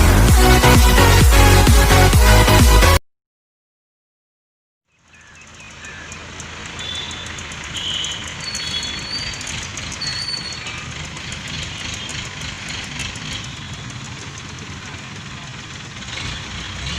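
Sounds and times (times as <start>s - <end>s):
drilling rig running: 0.0s - 3.0s, 5.2s - 16.9s
short high chirps: 6.8s - 10.7s.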